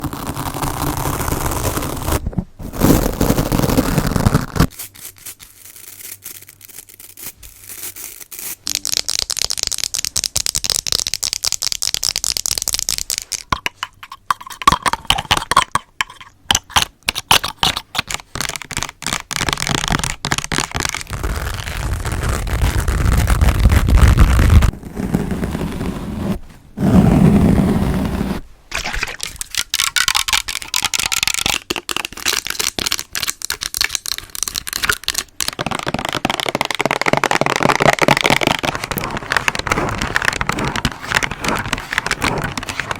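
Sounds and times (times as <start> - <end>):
rubbing and scraping noise: 0.0 - 28.5, 34.0 - 42.9
rapid tapping on microphone: 35.3 - 42.9.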